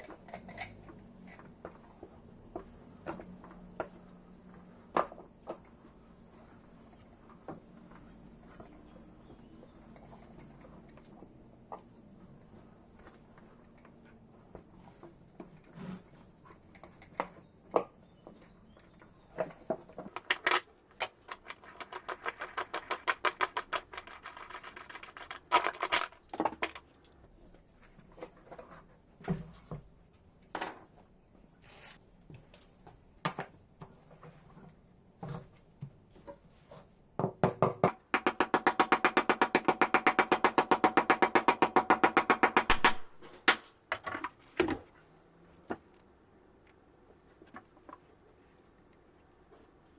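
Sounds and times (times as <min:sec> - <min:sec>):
tools knocking and clinking: 0:19.4 - 0:27.1, 0:37.2 - 0:43.0.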